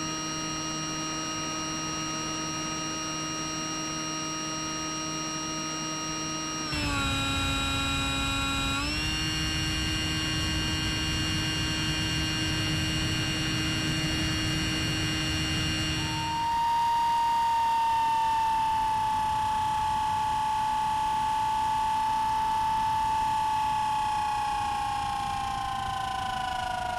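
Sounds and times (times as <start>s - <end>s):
electric motor propeller whine: 0.0s - 26.9s
high tone: 6.7s - 16.7s.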